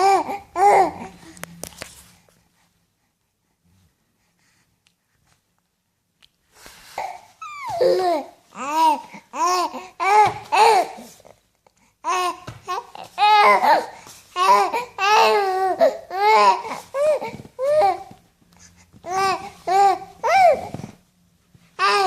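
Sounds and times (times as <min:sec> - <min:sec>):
baby cooing: 0:00.0 - 0:01.4, 0:07.0 - 0:11.2, 0:12.0 - 0:18.2, 0:19.0 - 0:20.9, 0:21.8 - 0:22.0.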